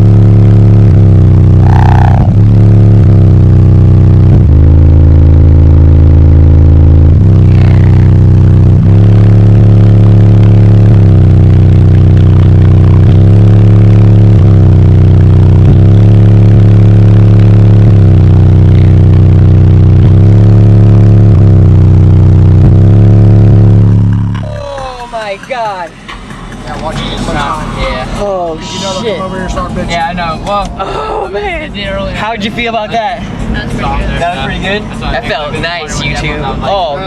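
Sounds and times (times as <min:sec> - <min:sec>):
loud bass from subwoofers: 0:00.0 - 0:30.6, 0:31.2 - 0:37.0.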